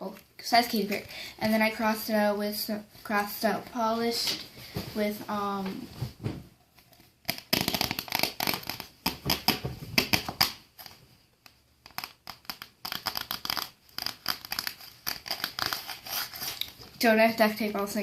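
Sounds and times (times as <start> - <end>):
material crinkling and crackling: 4.2 - 17.1.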